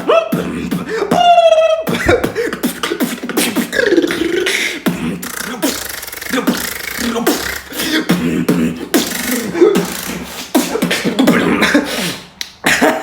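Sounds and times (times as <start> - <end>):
beatboxing: 0.0 - 13.0.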